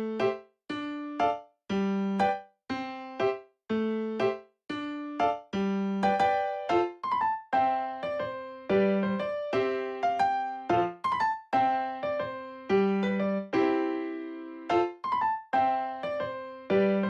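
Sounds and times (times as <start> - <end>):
piano-like keyboard chords: 0.0 - 17.0.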